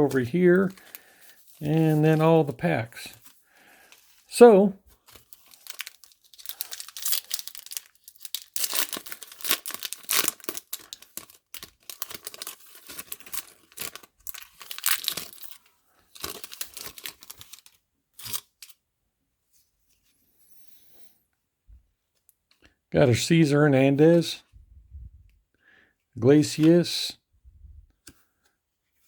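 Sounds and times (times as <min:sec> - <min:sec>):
foil wrapper tearing and crinkling: 0:00.2 - 0:02.3, 0:05.0 - 0:18.8.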